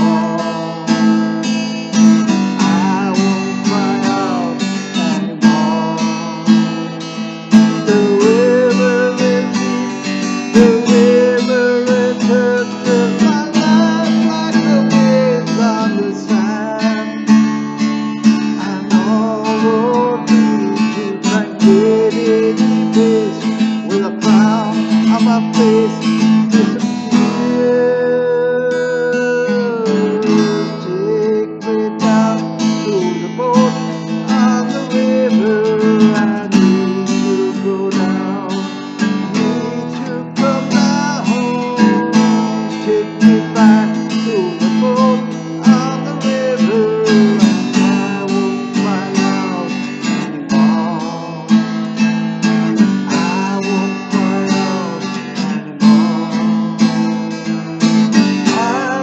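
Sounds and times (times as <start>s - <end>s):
strummed acoustic guitar: 0.0s - 59.0s.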